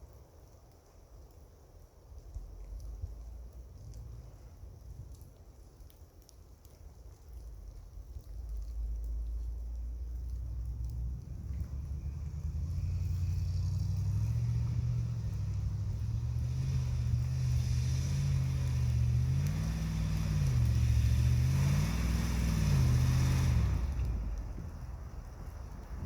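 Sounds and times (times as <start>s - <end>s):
car engine revving: 10.8s - 24.4s.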